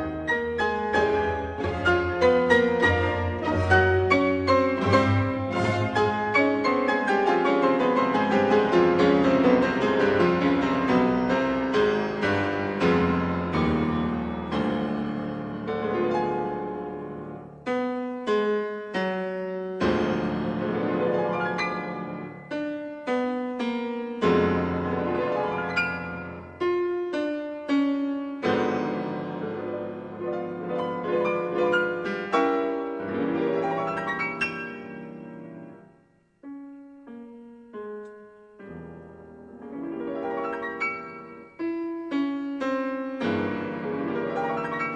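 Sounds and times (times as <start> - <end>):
piano music: 0.0 - 44.9.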